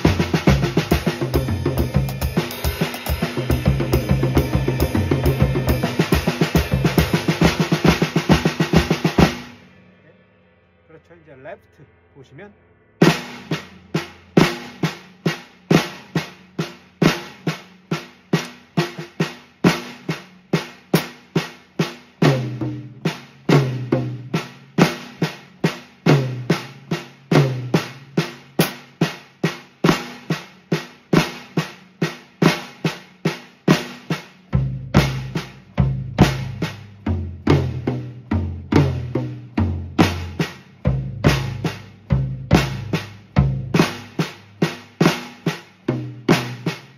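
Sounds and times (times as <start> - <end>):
snare drum triplets: 0.0 - 9.5, 13.0 - 22.6
deeper drum strokes: 0.0 - 19.2.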